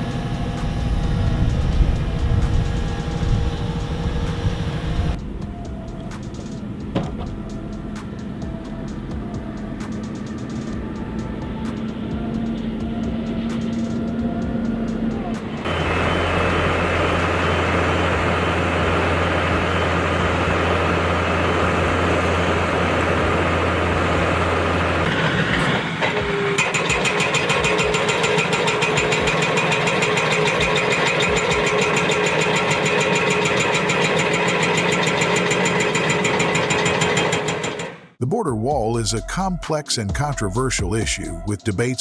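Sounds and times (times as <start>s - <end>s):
heavy machinery engine running: 0.0s - 38.2s
fast mechanical rattling: 26.6s - 38.1s.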